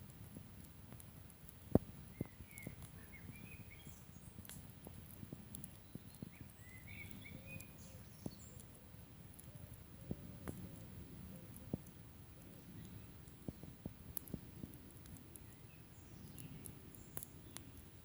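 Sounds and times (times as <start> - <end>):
campfire crackling and popping: 0.0 - 18.0
birds chirping: 2.0 - 4.5, 5.5 - 13.8, 15.2 - 17.8.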